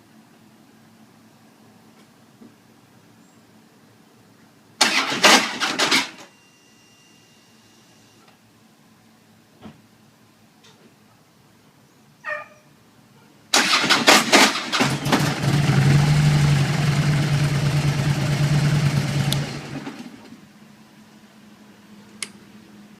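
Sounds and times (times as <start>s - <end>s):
motorcycle engine clattering start: 4.8s - 6.2s, 13.5s - 20.4s
motorcycle engine humming: 14.7s - 20.5s.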